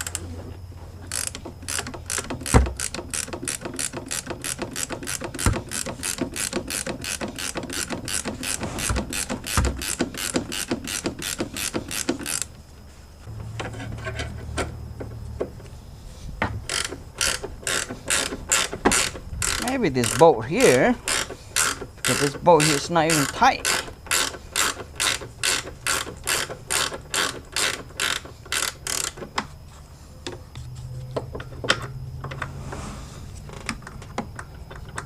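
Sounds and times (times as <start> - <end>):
ratchet wrench clicking: 1.1 - 12.5, 16.7 - 29.3.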